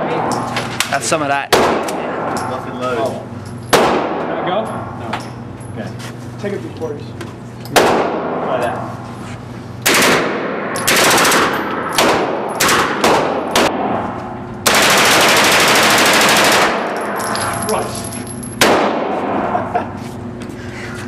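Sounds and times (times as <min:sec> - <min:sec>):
automatic gunfire: 0:09.8 - 0:13.8, 0:14.6 - 0:16.9.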